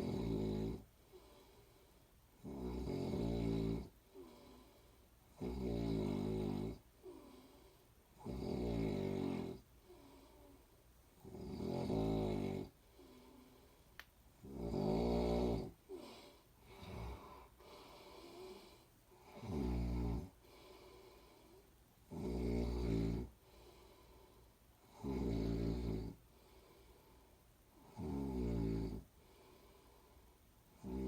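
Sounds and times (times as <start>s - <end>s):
person snoring: 0.0s - 1.6s, 2.4s - 10.6s, 11.2s - 13.8s, 14.4s - 27.0s, 27.8s - 30.1s, 30.7s - 31.0s
soft breaths: 0.7s - 2.4s, 3.9s - 5.4s, 6.1s - 8.2s, 9.5s - 11.4s, 12.4s - 14.6s, 15.4s - 22.1s, 23.1s - 31.0s.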